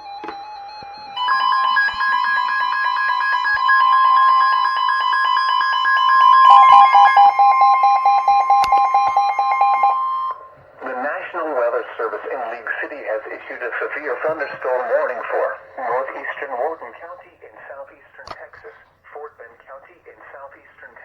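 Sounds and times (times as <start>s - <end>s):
pulsing electronic alarm tone: 0.0s - 10.5s.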